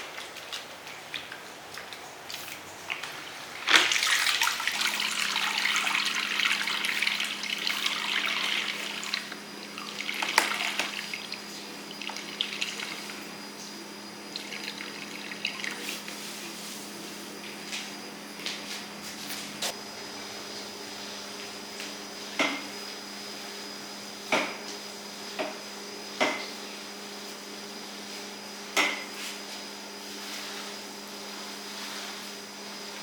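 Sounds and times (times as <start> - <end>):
tap water running into sink: 0.1 - 13.3, 14.3 - 15.9.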